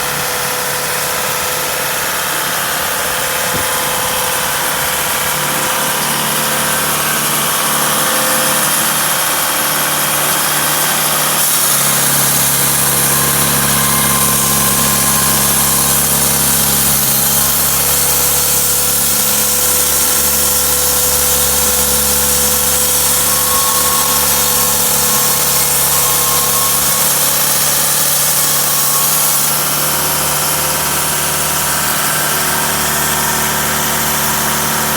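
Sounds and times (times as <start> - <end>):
diesel engine running: 0.0 - 11.4.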